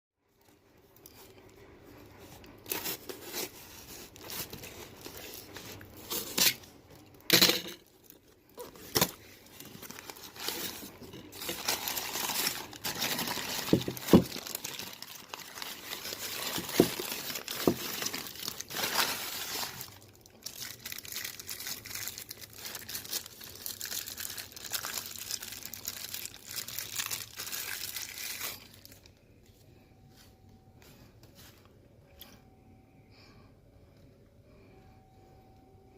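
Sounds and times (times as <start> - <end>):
packaging crinkling and rustling: 0.3 - 29.5
packaging ripping: 7.8 - 29.0.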